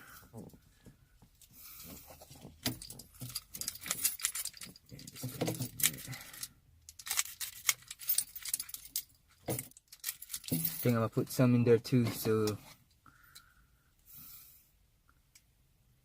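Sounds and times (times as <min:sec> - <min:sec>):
key ring jangling: 0:02.8 - 0:11.0.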